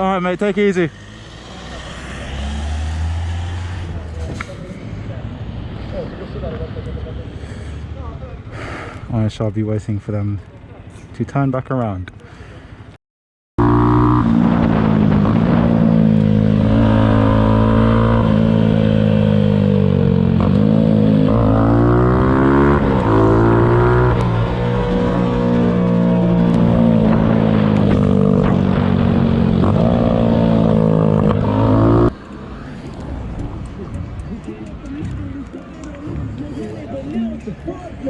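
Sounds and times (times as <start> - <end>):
motorcycle engine revving: 0.9 - 4.2, 13.6 - 32.2.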